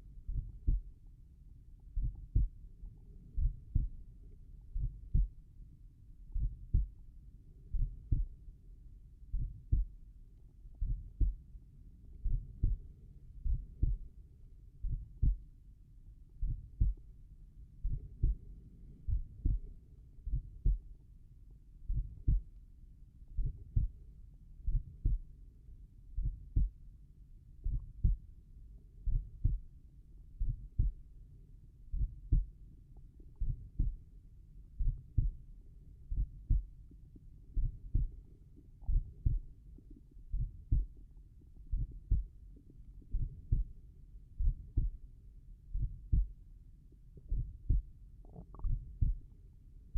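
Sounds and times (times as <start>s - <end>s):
heartbeat thumps: 0.2s - 1.0s, 1.9s - 2.6s, 3.3s - 4.1s, 4.7s - 5.5s, 6.3s - 7.0s, 7.6s - 8.4s, 9.3s - 10.0s, 10.7s - 11.4s, 12.1s - 14.2s, 14.8s - 15.5s, 16.4s - 17.1s, 17.8s - 21.0s, 21.9s - 22.5s, 23.4s - 24.0s, 24.7s - 25.3s, 26.2s - 26.8s, 27.6s - 28.3s, 29.0s - 29.7s, 30.4s - 31.1s, 31.9s - 32.5s, 33.3s - 34.0s, 34.8s - 35.5s, 36.1s - 43.8s, 44.4s - 45.0s, 45.7s - 46.4s, 47.2s - 49.3s.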